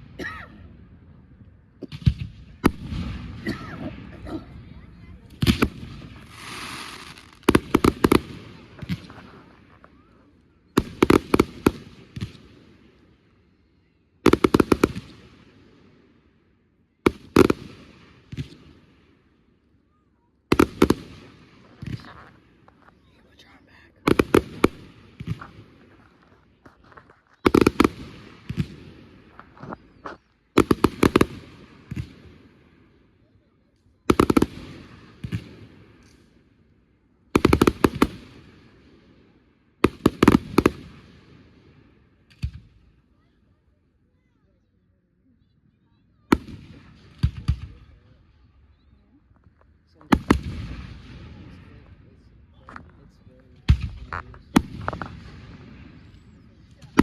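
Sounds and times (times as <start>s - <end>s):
fireworks bangs: 1.8s - 13.3s, 14.2s - 16.1s, 17.1s - 19.3s, 20.5s - 32.8s, 34.1s - 36.3s, 37.4s - 39.2s, 39.8s - 42.8s, 46.3s - 48.4s, 49.6s - 57.0s
fireworks hissing crackle: 5.4s - 10.2s, 20.6s - 31.6s, 53.8s - 57.0s.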